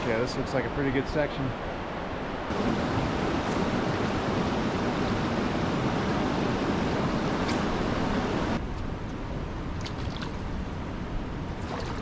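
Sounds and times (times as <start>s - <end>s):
river water rushing: 0.0s - 8.6s.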